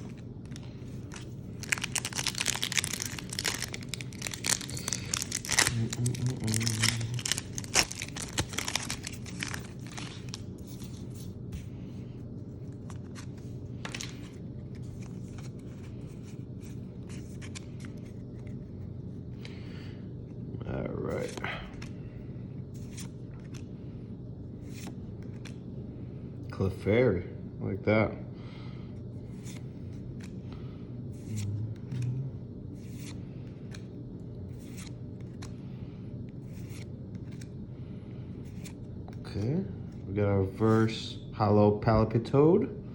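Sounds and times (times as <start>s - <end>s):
steady low hum: 0.0s - 42.9s
cards sliding and scraping: 36.4s - 37.5s.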